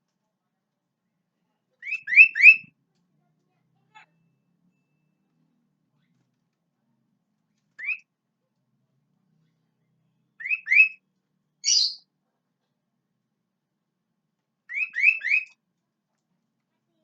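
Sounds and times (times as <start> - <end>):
bird chirping: 1.8 - 2.7, 7.8 - 8.0, 10.4 - 11.0, 11.6 - 12.0, 14.7 - 15.6.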